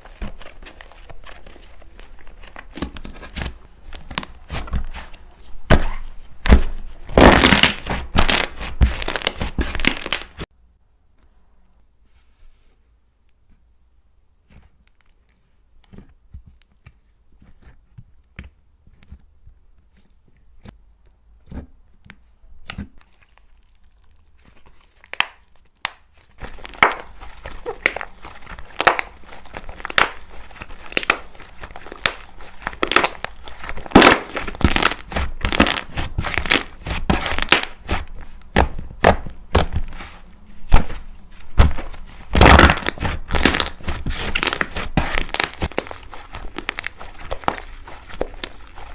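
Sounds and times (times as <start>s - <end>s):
slime clicking and crackling: 5.8s - 10.4s, 22.6s - 40.0s, 41.6s - 48.9s.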